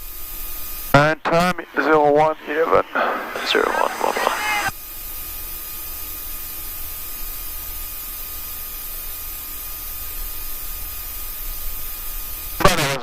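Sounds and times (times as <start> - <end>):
airliner cockpit hiss and rumble: 0.0 - 13.0
faint steady tones: 0.6 - 4.7.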